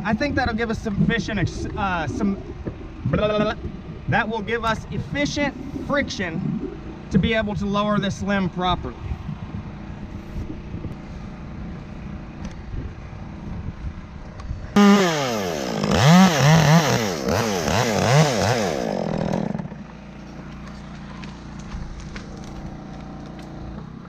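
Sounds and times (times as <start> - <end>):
chainsaw cutting: 14.8 - 23.9.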